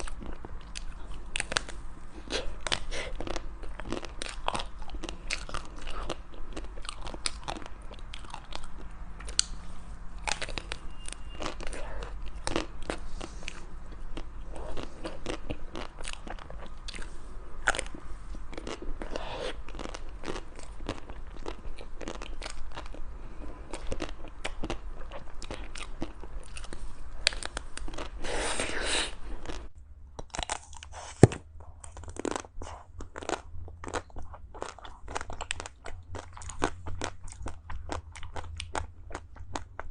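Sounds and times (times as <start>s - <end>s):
low steady hum: 0.0s - 39.9s
person chewing crunchy ice cream: 0.0s - 39.9s.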